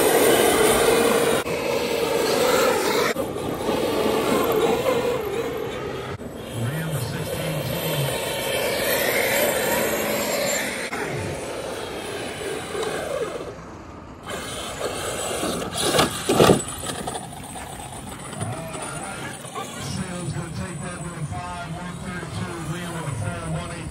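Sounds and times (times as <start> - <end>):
rc truck motors revving: 0.0 - 23.9.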